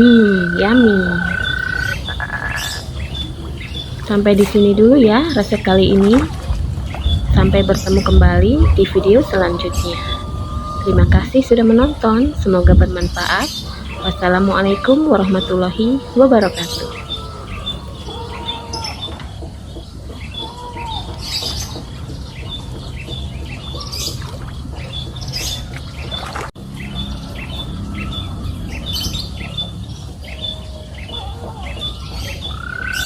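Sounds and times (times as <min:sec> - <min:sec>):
low steady rumble: 0:00.0 - 0:18.5
bird calls: 0:00.0 - 0:26.4, 0:27.0 - 0:33.0.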